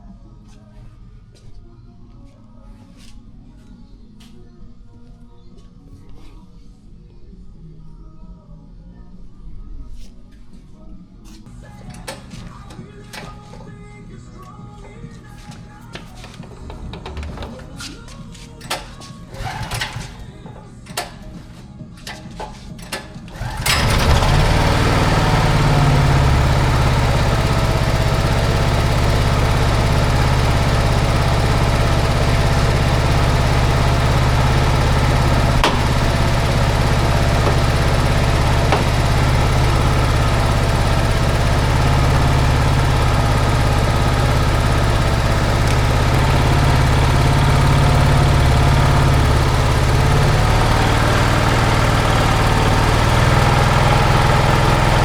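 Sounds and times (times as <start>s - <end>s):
generator engine starting and running: 11.5s - 55.0s.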